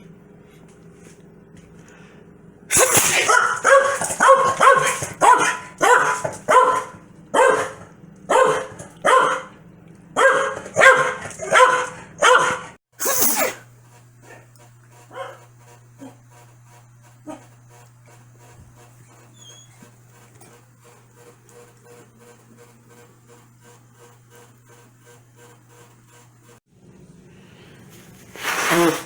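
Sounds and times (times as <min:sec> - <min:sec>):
dog barking angrily: 0:02.7 - 0:09.6, 0:10.2 - 0:12.8, 0:15.1 - 0:15.4.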